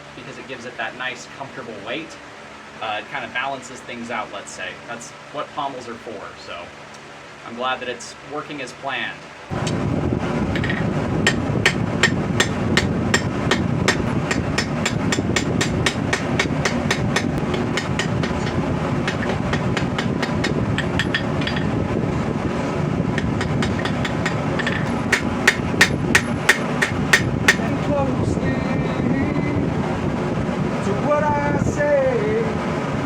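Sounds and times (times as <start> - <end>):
hammer striking steel on anvil: 10.6 - 21.7, 23.2 - 27.7.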